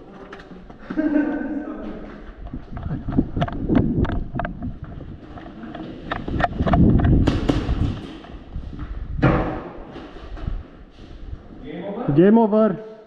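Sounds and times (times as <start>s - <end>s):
movement and wind rumble: 2.0s - 11.7s
sharp clicks and knocks: 2.4s - 8.4s.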